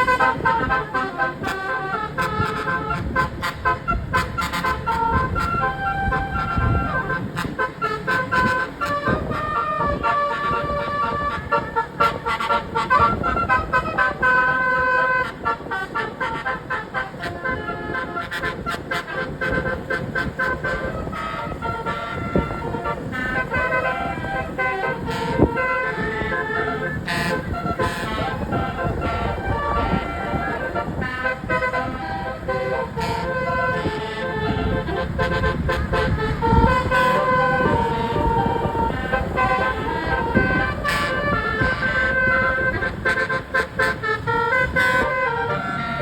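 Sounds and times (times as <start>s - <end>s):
bus horn playing a tune: 0.0s - 46.0s.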